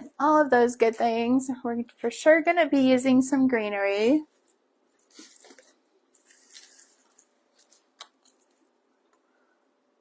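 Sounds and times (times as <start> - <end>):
rustling and crinkling materials: 4.2 - 8.8.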